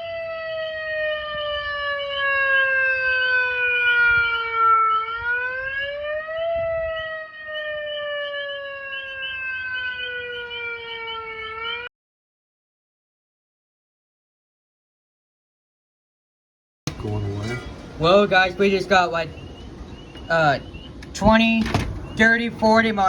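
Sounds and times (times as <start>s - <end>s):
megaphone siren wail: 0.0s - 11.9s.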